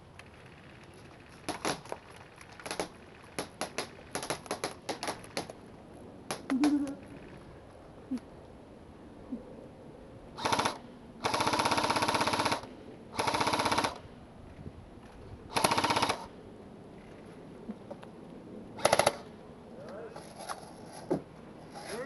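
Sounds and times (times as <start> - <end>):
airsoft rifle automatic fire: 10.4 - 14.0, 15.5 - 16.3, 18.8 - 19.3.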